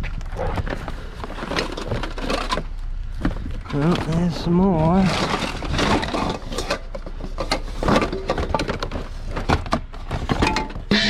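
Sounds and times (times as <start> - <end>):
junk knocking and clattering: 0.0 - 11.0.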